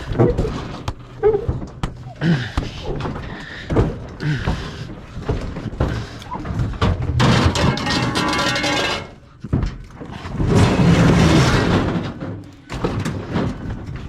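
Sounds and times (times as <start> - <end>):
scrap metal knocking and thumping: 0.0 - 14.0.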